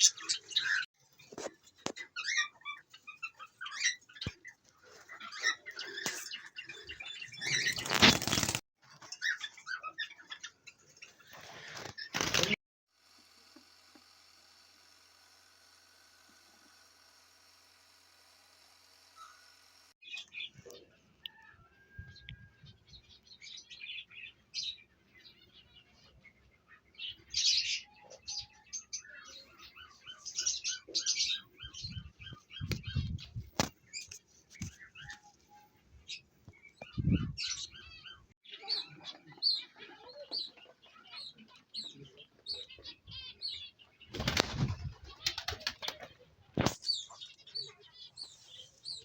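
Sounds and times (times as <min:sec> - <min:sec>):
wings flapping: 0:07.4 - 0:08.6, 0:11.3 - 0:12.6, 0:44.1 - 0:46.9
pet birds chirping: 0:19.2 - 0:19.4, 0:23.0 - 0:49.0.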